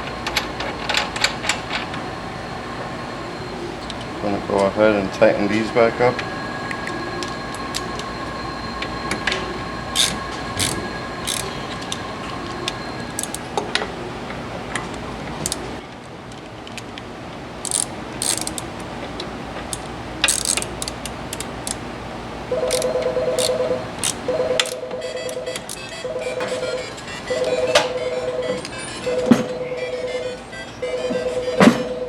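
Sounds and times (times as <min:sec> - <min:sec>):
rapidly pulsing tone: 0:02.0 - 0:15.8
wrench clicking: 0:10.0 - 0:12.0, 0:13.2 - 0:13.5, 0:15.4 - 0:15.8, 0:17.6 - 0:19.0, 0:19.6 - 0:21.8, 0:22.6 - 0:25.9.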